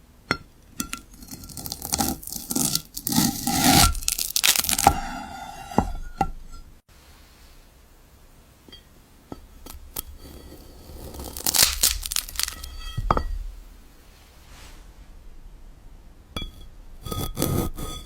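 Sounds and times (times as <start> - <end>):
glass crackling and crunching: 0.6 - 6.8, 9.6 - 13.7, 16.4 - 18.0.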